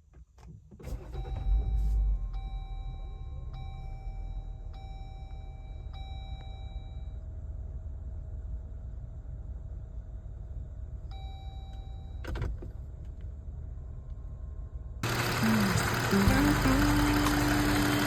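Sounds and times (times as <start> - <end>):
car engine starting and idling: 0.1 - 18.0
dashboard warning chime: 1.1 - 7.2, 11.1 - 12.3, 15.0 - 18.0.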